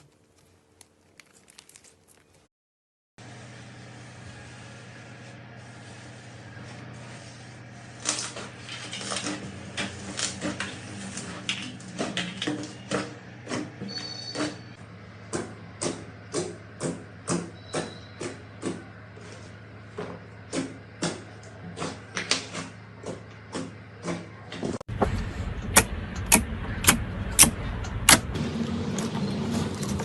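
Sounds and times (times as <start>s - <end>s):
steady low hum: 14.7s - 30.0s.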